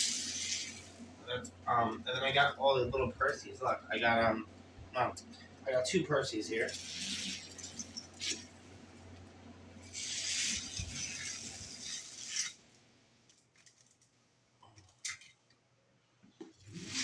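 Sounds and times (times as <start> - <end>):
toy trains rattling on track: 0.0 - 0.9, 6.6 - 8.5, 9.9 - 12.6.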